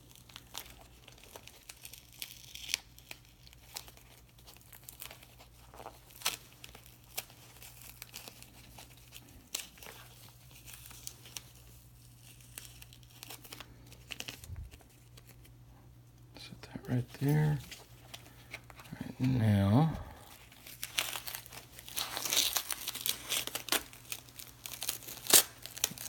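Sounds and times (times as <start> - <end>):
wrapping paper crinkling and tearing: 0.0 - 15.6, 16.4 - 26.0.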